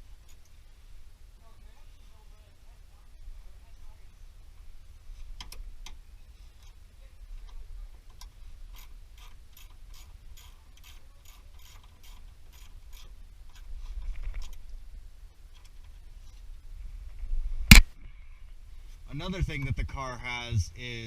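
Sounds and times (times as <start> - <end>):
ratchet wrench clicking: 8.7 - 13.6.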